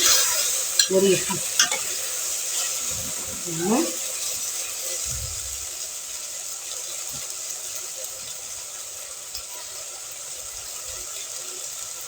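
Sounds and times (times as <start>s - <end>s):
vegetables frying in a pot: 0.0s - 12.0s.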